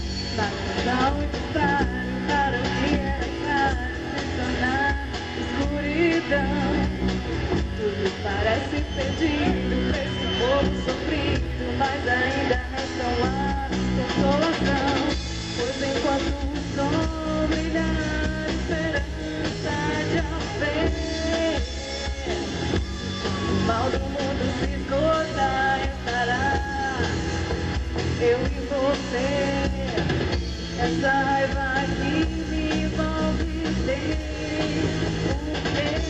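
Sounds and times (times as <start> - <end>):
rock band playing: 0.0 - 36.0.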